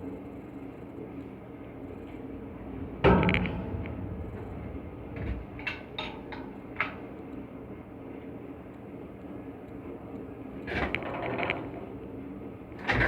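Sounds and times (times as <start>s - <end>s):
machine hum: 0.3s - 8.2s
loud metal clank: 2.2s - 7.3s.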